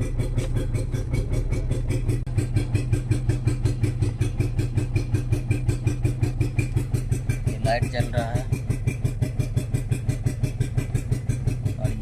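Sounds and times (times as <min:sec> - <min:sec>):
car engine misfiring: 0:00.0 - 0:12.0.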